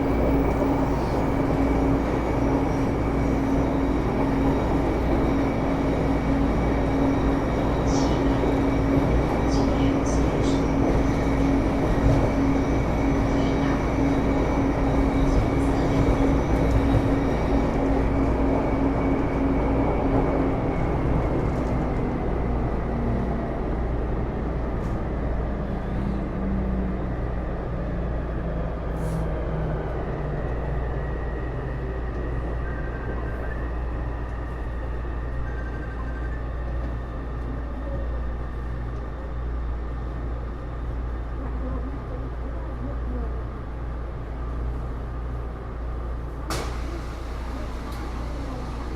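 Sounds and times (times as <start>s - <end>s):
wheel and track rumble: 46.1s - 48.9s.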